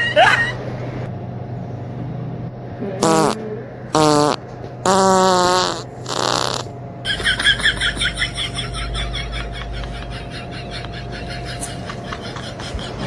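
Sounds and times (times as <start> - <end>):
short pulses: 3.0 - 6.7
buzzy fart noises: 3.0 - 6.8.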